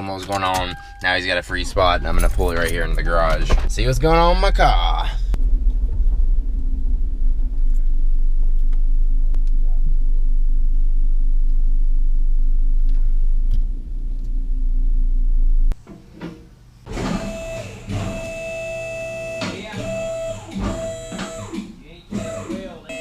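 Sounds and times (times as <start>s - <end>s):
car engine and road rumble: 0.1s - 15.8s.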